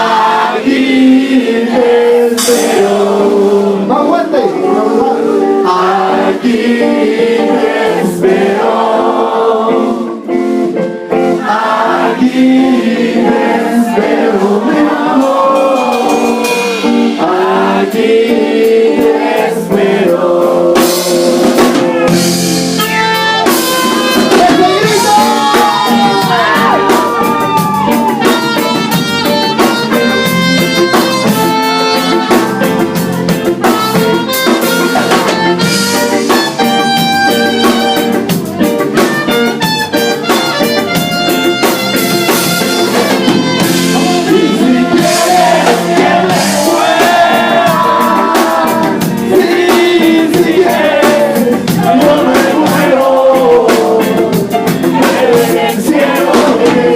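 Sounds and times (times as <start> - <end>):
drums: 0.0 - 56.9
guitar: 0.0 - 56.9
person singing: 43.3 - 56.9.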